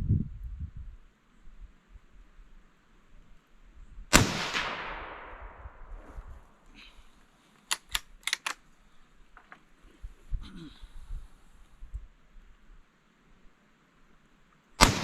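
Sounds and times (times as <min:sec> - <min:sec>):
rifle shot echoing: 0:04.1 - 0:06.6, 0:14.8 - 0:15.0
rifle bolt clicks: 0:07.6 - 0:08.6.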